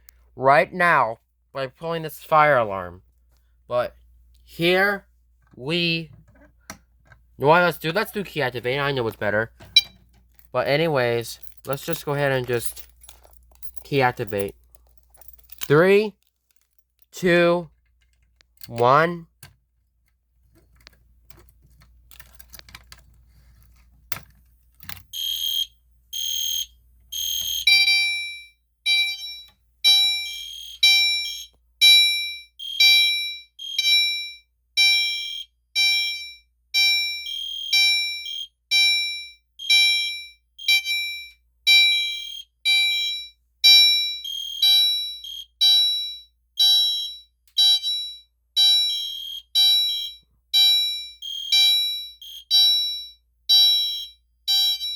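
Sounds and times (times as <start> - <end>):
fire alarm horns pulsing: 25.2 - 54.9.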